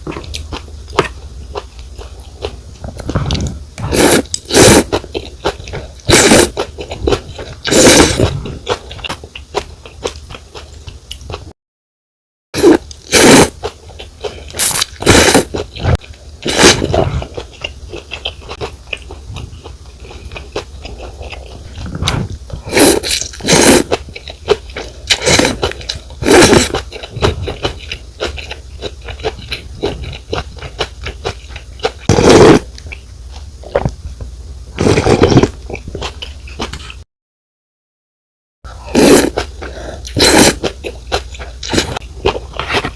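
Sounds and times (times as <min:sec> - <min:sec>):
noodles slurped: 0:02.9 - 0:05.0, 0:06.0 - 0:08.8, 0:12.6 - 0:13.5, 0:14.5 - 0:17.6, 0:20.8 - 0:24.0, 0:24.8 - 0:30.9, 0:38.8 - 0:42.9
wet chewing: 0:12.7 - 0:34.0, 0:38.7 - 0:42.9.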